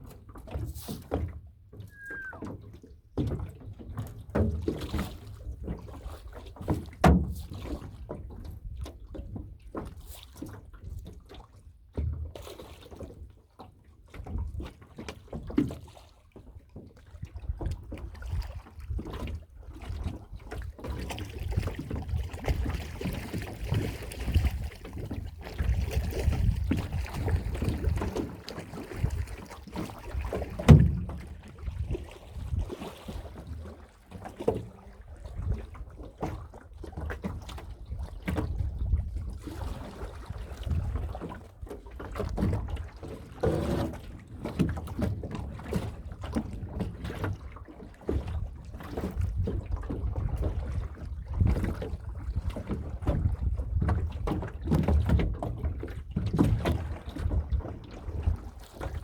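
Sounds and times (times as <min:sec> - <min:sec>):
water knocking and splashing on hull: 0:00.0 - 0:59.0
wind rumbling on microphone: 0:17.4 - 0:33.5, 0:37.4 - 0:41.2, 0:48.2 - 0:59.0.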